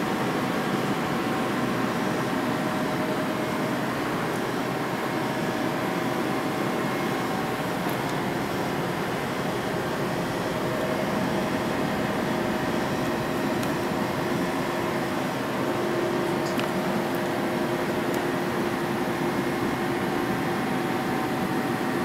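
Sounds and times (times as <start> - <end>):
mechanical hum with faint whine: 0.0 - 22.0.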